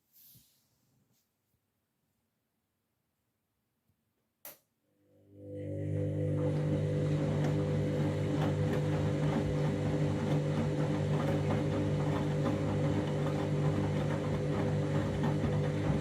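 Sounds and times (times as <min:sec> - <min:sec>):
washing machine motor hum: 0:05.1 - 0:16.0.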